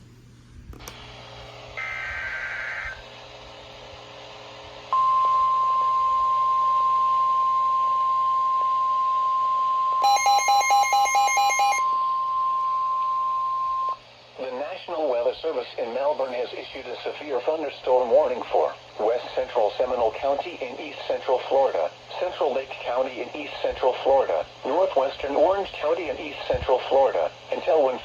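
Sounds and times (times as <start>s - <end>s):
digital data warble: 1.8s - 3.0s.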